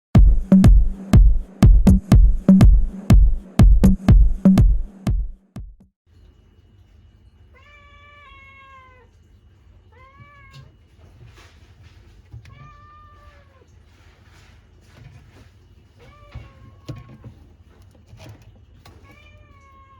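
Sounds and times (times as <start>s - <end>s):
steady low hum: 0.2s - 5.7s
cat meowing: 7.6s - 9.2s, 9.9s - 10.8s, 12.5s - 13.7s, 16.0s - 17.5s, 19.0s - 19.9s.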